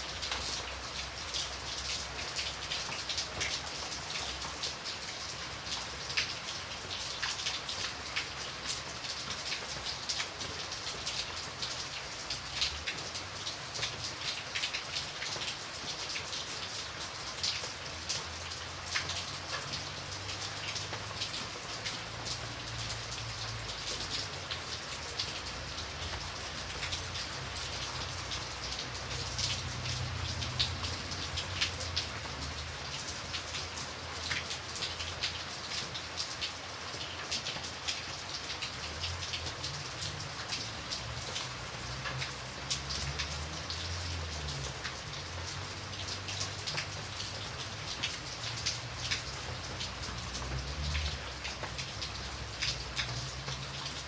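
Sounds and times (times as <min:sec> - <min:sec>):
raindrops pattering on a surface: 0:00.0 - 0:54.0.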